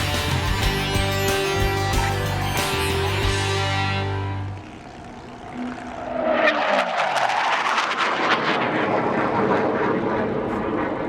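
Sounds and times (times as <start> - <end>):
aircraft engine flying past: 3.5 - 11.0.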